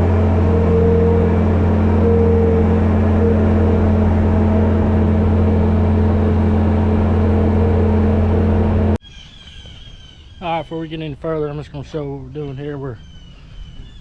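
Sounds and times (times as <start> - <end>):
engine running steadily: 0.0 - 9.0.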